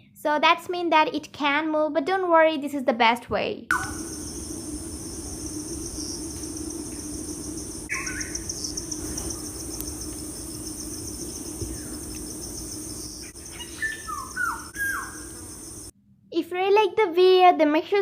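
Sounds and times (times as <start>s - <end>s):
bird chirp: 3.7s - 15.9s
insects trilling: 3.7s - 15.9s
low hum: 3.7s - 15.9s.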